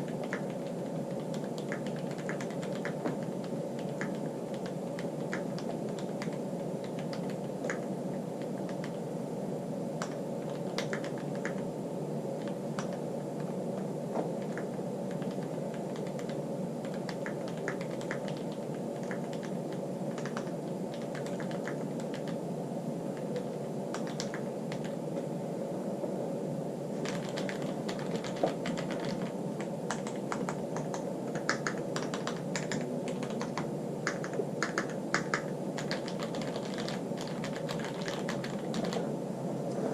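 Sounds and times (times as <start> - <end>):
mechanical keyboard typing: 0.0 - 7.9, 10.0 - 11.6, 14.4 - 22.4, 23.2 - 25.0, 27.0 - 39.0.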